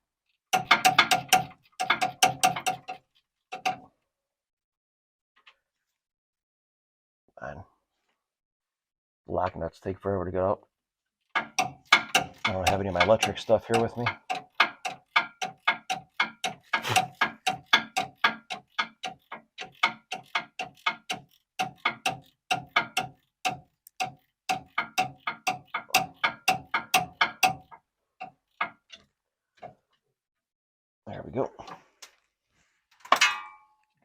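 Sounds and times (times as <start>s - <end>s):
hand ratchet clicking: 0.6s - 3.8s, 11.4s - 27.7s.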